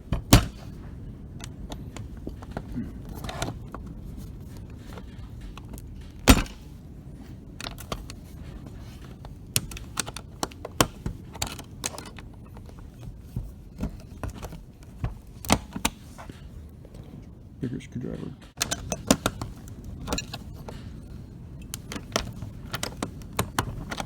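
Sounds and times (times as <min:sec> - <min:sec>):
screwdriver scraping metal lock: 0:07.6 - 0:13.0, 0:18.5 - 0:24.0.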